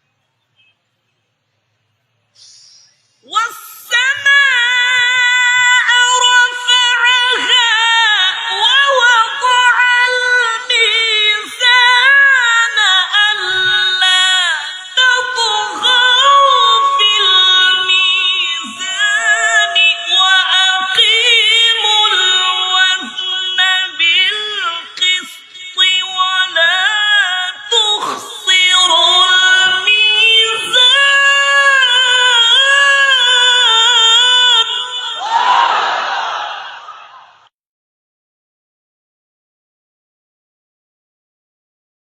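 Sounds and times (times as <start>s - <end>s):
high voice chanting recitation: 2.4s - 36.0s.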